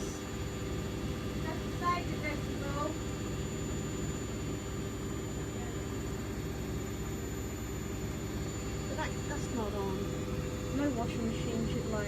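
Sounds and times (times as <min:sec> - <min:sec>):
washing machine whirring: 0:00.0 - 0:12.0.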